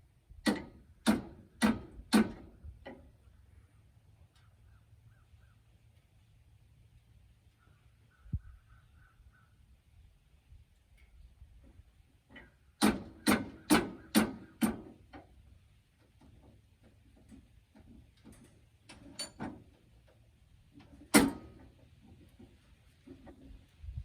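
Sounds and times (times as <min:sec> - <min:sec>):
sharp knocks: 0:12.8 - 0:14.9.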